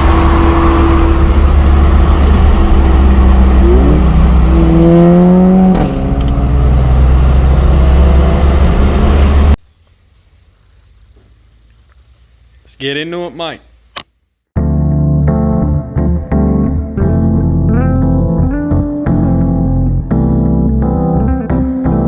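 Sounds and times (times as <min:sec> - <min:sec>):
motorcycle engine accelerating: 0:00.0 - 0:09.6
wind rumble: 0:00.0 - 0:09.6.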